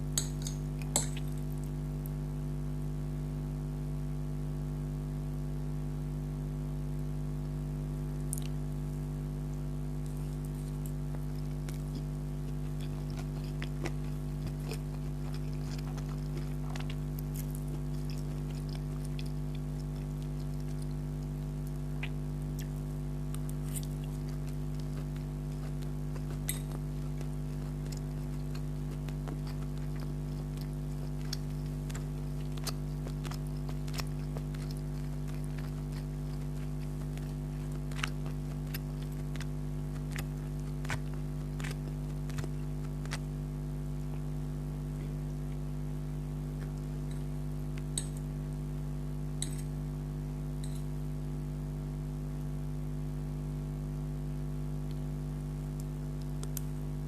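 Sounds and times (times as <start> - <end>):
person chewing food: 0.0 - 1.8, 10.0 - 44.3, 46.5 - 48.3.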